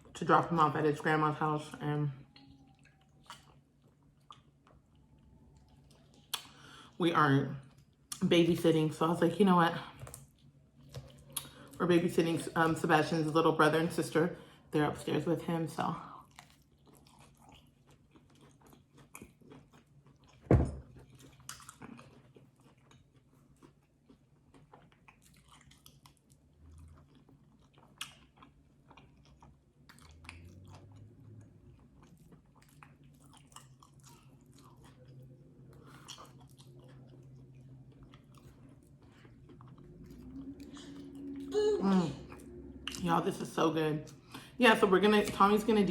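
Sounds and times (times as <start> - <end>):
chewing and biting food: 2.2 - 6.8, 16.0 - 41.5.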